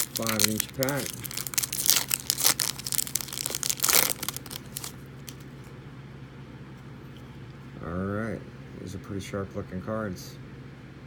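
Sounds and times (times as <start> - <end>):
foil wrapper tearing and crinkling: 0.0 - 5.7.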